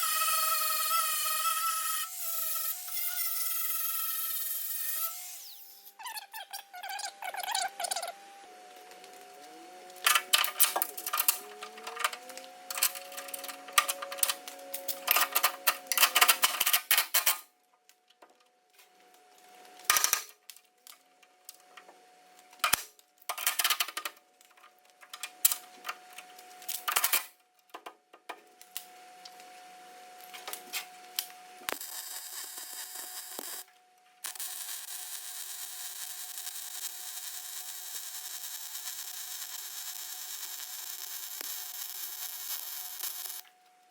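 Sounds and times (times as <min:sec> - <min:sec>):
welding arc crackling: 0:30.2 - 0:43.5.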